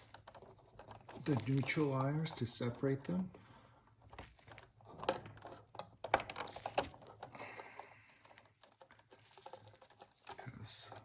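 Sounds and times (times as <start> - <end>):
wires and wire nuts clicking: 4.2 - 11.0.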